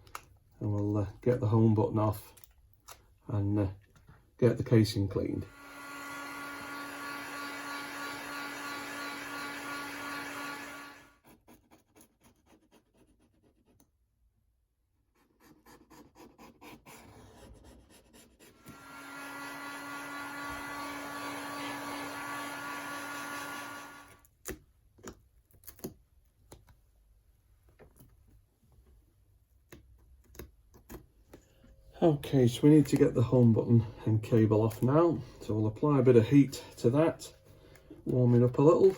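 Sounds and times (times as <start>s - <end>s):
small electric motor humming: 5.5s - 11.1s, 18.6s - 24.2s.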